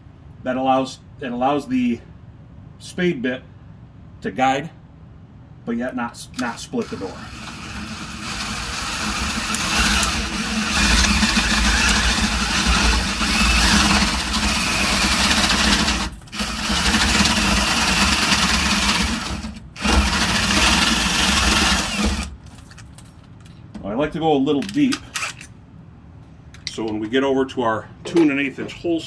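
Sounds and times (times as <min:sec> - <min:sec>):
cordless drill boring into wood: 0:06.4 - 0:22.3.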